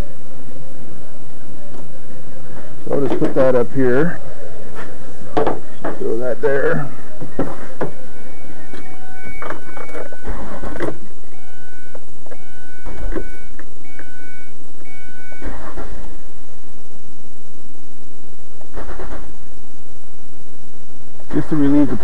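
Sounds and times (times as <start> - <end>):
dashboard warning chime beeping: 7.9 - 15.7
car engine cranking: 8.7 - 11.2, 14.9 - 16.3, 18.6 - 19.4.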